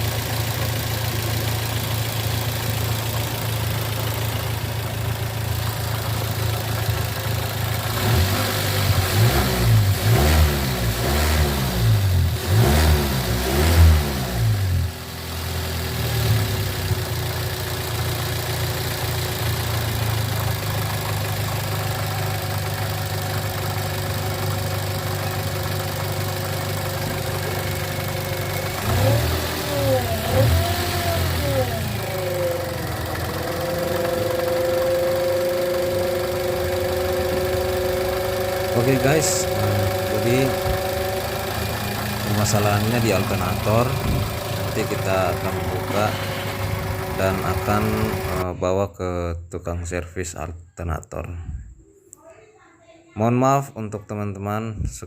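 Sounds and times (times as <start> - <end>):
car engine idling and revving: 0.0 - 48.5
howl from engine pulleys: 28.9 - 41.3.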